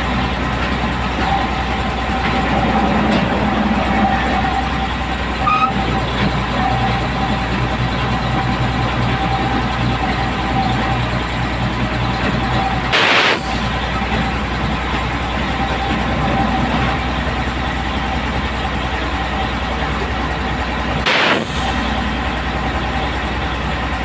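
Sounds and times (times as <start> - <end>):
truck engine drone: 0.0 - 24.0
thin high whine: 12.9 - 13.7.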